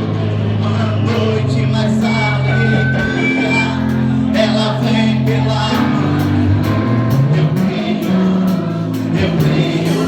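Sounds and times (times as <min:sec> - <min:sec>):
worship band playing: 0:00.0 - 0:10.0
drums steady beat: 0:02.0 - 0:10.0.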